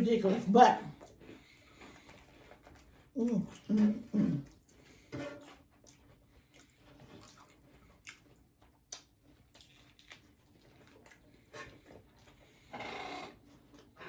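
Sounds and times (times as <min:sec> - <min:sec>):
people chewing: 0:01.0 - 0:12.7.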